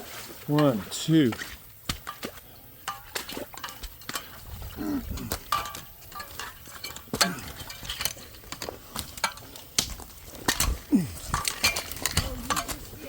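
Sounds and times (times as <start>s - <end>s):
person grunting: 4.8s - 5.4s, 10.8s - 11.4s.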